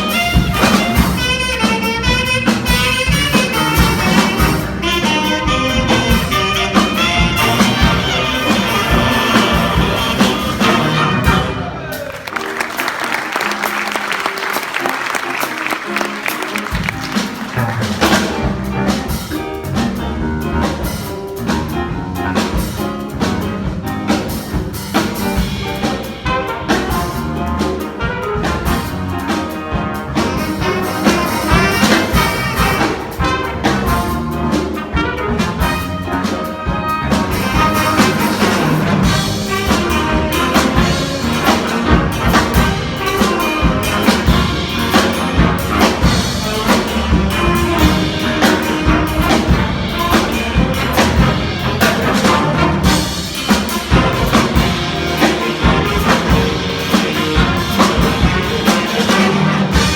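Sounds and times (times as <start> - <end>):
brass band music: 0.0 - 59.9
drum kit beat: 0.0 - 59.9.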